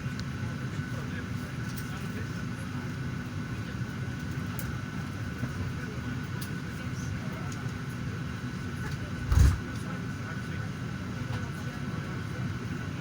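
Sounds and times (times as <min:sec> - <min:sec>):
airliner cabin rumble: 0:04.1 - 0:13.0.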